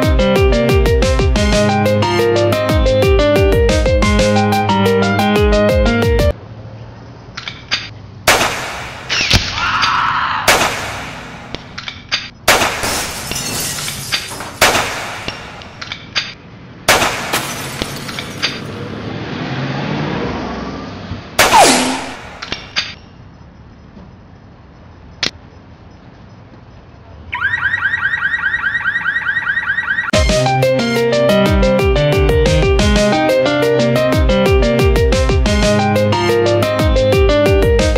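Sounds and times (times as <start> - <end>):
gunshots with echoing tails: 8.3 - 9.5, 10.5 - 11.5, 12.5 - 13.0, 14.6 - 15.6, 16.9 - 17.4, 21.4 - 22.4
fast-pulsing alarm tone: 27.4 - 30.2.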